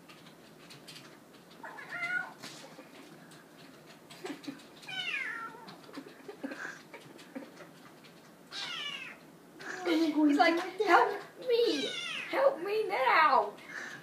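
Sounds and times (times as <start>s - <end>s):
kitten meowing: 8.5s - 9.2s, 11.7s - 12.3s.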